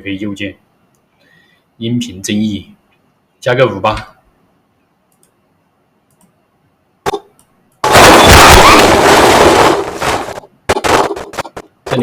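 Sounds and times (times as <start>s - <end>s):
loud rushing explosive burst: 7.8s - 11.4s.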